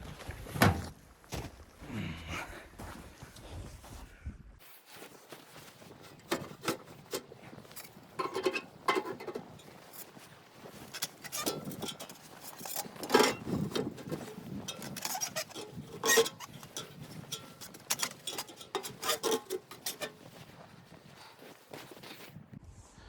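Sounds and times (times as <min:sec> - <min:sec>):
objects knocking and clinking: 0:08.2 - 0:09.5.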